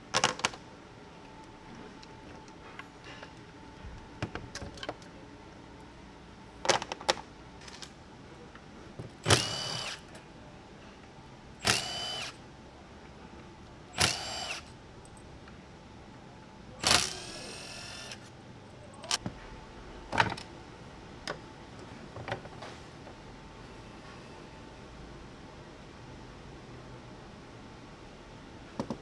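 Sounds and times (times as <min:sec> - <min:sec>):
cordless power tool whirring: 0:09.2 - 0:10.2, 0:11.6 - 0:12.4, 0:13.9 - 0:14.8, 0:16.8 - 0:18.3
metal parts clicking: 0:16.8 - 0:18.3.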